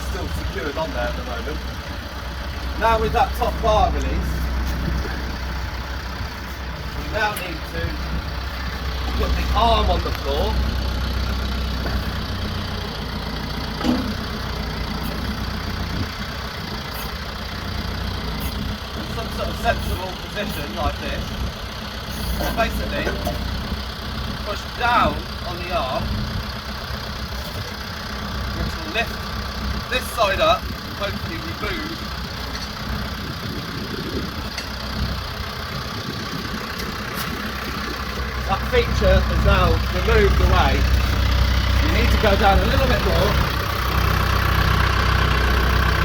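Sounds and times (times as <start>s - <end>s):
tractor diesel engine idling: 0.0s - 46.0s
hydraulic backhoe arm pushing: 3.5s - 20.3s, 21.2s - 25.4s
short thump: 13.8s - 14.3s.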